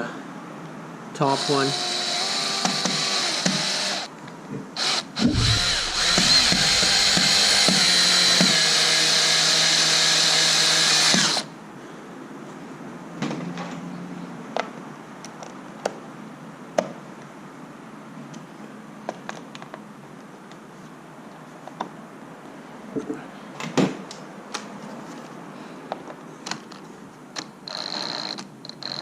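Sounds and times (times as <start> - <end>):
drill driver motor whine: 1.3 - 4.1, 4.8 - 11.5.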